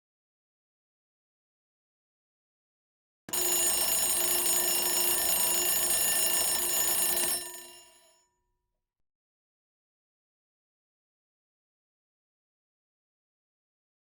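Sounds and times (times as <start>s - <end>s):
alarm bell ringing: 3.3s - 8.2s.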